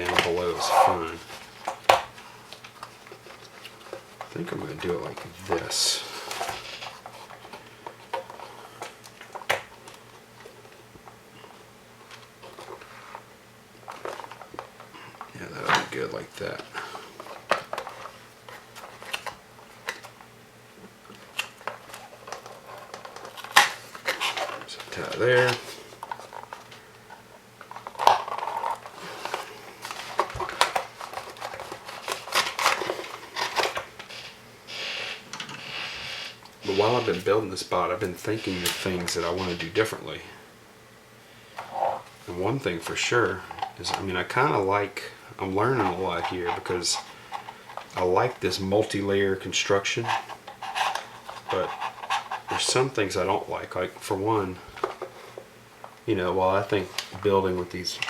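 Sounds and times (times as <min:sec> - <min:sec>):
short scraping hiss: 0:34.2 - 0:36.4.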